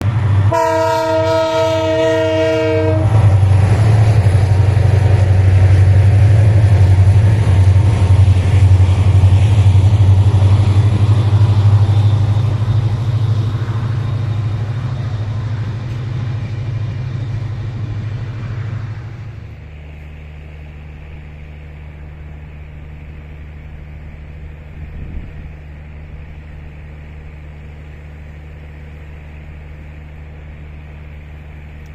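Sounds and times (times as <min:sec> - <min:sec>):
train passing with low rumble: 0:00.0 - 0:31.9
train horn: 0:00.4 - 0:03.7.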